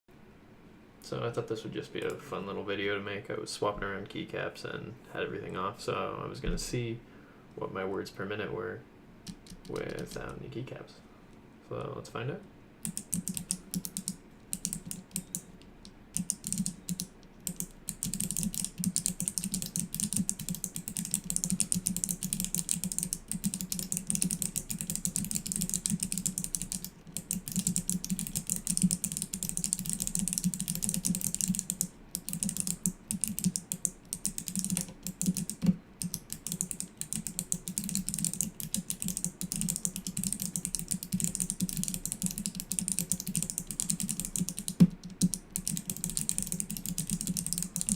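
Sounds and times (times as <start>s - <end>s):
fast mechanical keyboard typing: 9.2s - 10.4s, 12.8s - 47.9s.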